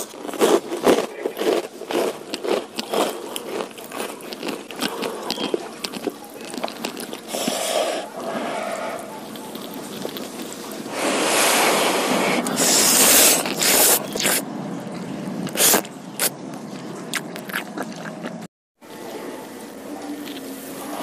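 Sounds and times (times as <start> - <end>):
close eating noise: 0.0 - 21.0
wet mouth and utensil sounds: 2.1 - 8.1, 9.0 - 10.9, 12.4 - 18.5.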